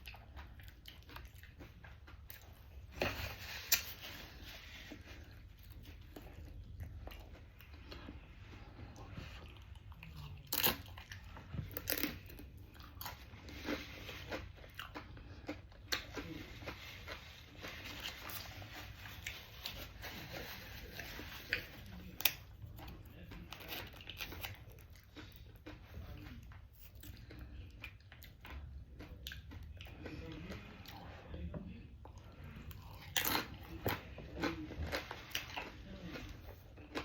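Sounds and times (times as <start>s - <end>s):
crunchy bites and chewing: 8.8s - 31.0s, 32.3s - 37.0s.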